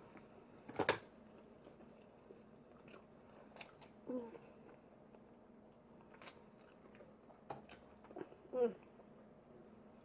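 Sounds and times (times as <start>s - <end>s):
faint chewing: 1.2s - 9.2s.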